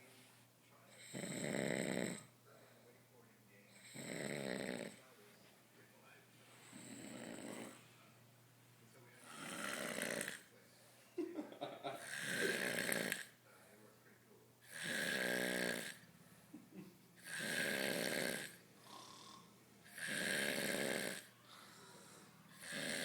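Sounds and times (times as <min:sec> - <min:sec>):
man snoring loudly: 0:01.0 - 0:02.3, 0:03.8 - 0:05.0, 0:06.8 - 0:07.8, 0:09.2 - 0:10.4, 0:12.0 - 0:13.3, 0:14.7 - 0:16.0, 0:17.2 - 0:23.0.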